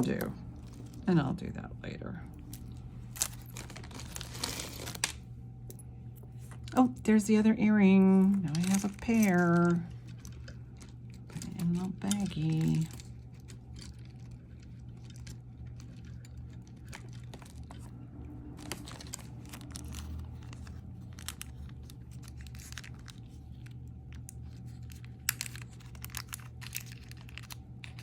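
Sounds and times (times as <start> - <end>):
plastic bag crinkling: 0.0 - 5.3, 7.9 - 28.0
steady low hum: 0.0 - 28.0.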